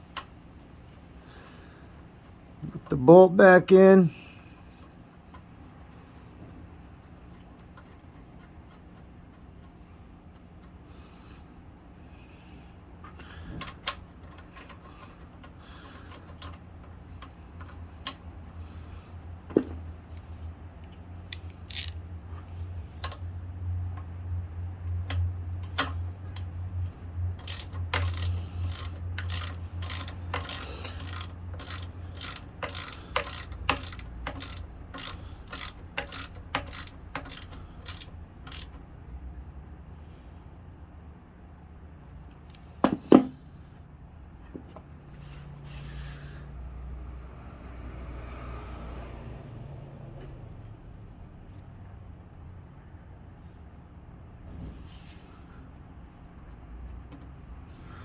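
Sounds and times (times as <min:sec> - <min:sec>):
ratchet clicking: 0:21.3 - 0:23.3, 0:24.8 - 0:38.8.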